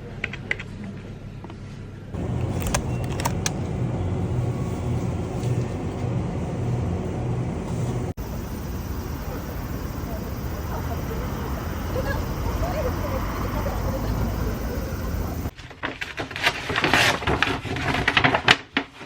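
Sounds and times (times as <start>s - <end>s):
sharp clicks: 2.2s - 3.7s
moving vehicle rumble: 2.2s - 15.5s.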